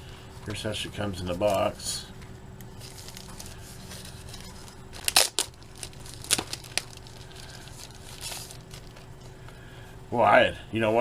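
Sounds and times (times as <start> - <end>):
faint steady hum: 0.0 - 11.0
packaging crinkling and tearing: 2.7 - 9.4.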